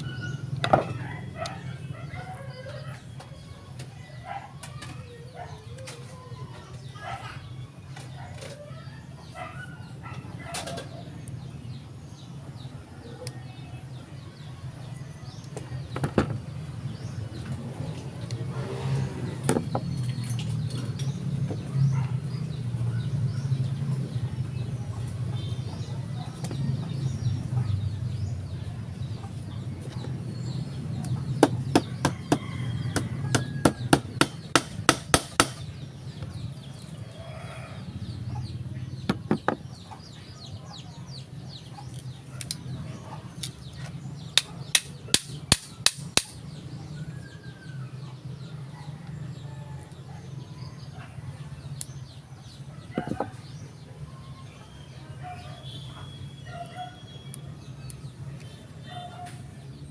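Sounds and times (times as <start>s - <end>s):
chickens clucking: 52.6s - 53.8s.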